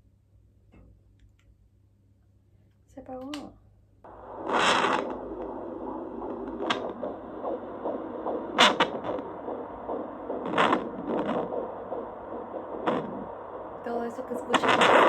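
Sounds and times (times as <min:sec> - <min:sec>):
static hiss: 0:04.1 - 0:15.0.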